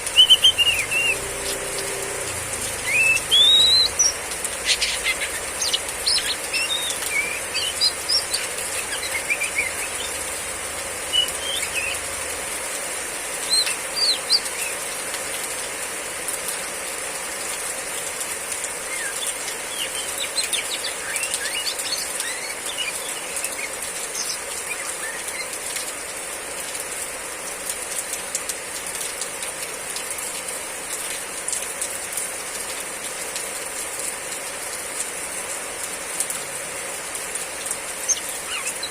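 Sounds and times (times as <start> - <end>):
bird chirping calls: 0.0 - 10.4, 11.0 - 12.1, 13.4 - 14.8, 18.9 - 25.6, 38.0 - 38.9
heavy rain: 0.0 - 38.9.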